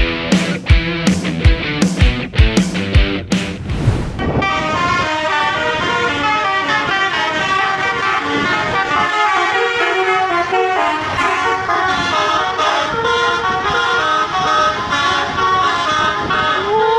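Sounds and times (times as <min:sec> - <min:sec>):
bus horns playing a quick tune: 0:04.6 - 0:16.8.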